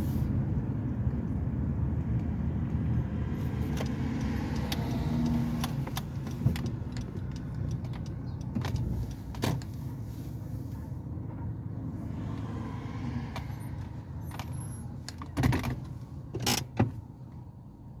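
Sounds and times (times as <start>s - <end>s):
car engine and tyres rumbling: 0.0s - 18.0s
light clicks and rattles: 3.6s - 9.8s.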